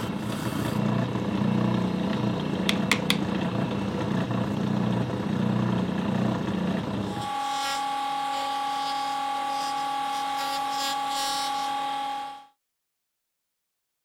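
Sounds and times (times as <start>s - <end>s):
power tool high whine: 5.4s - 12.6s.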